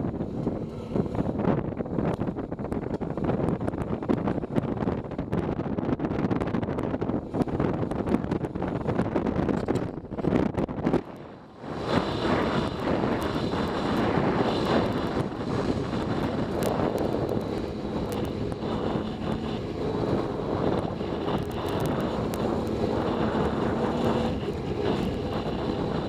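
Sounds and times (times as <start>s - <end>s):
wind noise on microphone: 0.0s - 26.0s
motorcycle engine running: 10.9s - 26.0s.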